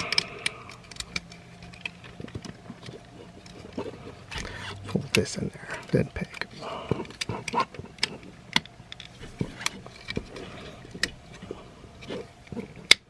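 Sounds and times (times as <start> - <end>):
plastic toy parts clicking: 0.0 - 3.7
soft handling rustle: 0.5 - 12.9.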